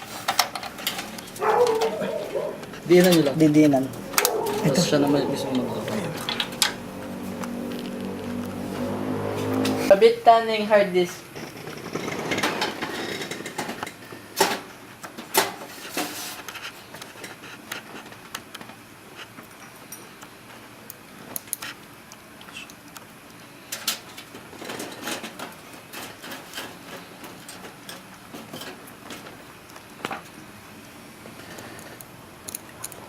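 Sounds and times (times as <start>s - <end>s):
small rattles: 11.2s - 13.9s.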